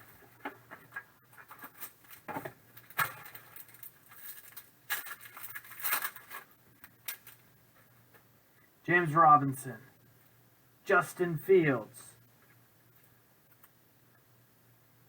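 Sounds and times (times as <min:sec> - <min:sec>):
packaging crinkling and rustling: 0:00.1 - 0:07.5.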